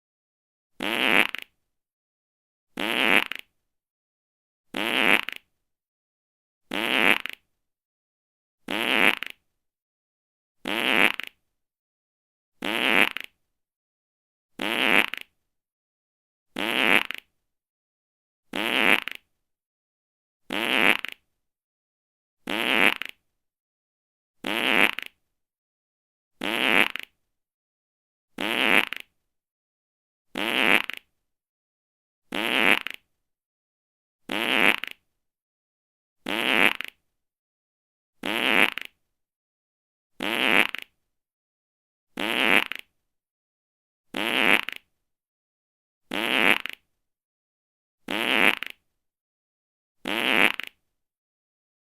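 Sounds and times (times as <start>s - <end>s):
short fart: 0.8s - 1.6s, 2.8s - 3.5s, 4.7s - 5.5s, 6.7s - 7.4s, 8.7s - 9.4s, 10.6s - 11.4s, 12.6s - 13.4s, 14.6s - 15.3s, 16.6s - 17.3s, 18.5s - 19.2s, 20.5s - 21.2s, 22.5s - 23.2s, 24.4s - 25.2s, 26.4s - 27.1s, 28.4s - 29.1s, 30.4s - 31.1s, 32.3s - 33.1s, 34.3s - 35.0s, 36.2s - 37.0s, 38.2s - 39.0s, 40.2s - 40.9s, 42.2s - 42.9s, 44.1s - 44.9s, 46.1s - 46.8s, 48.1s - 48.8s, 50.0s - 50.8s.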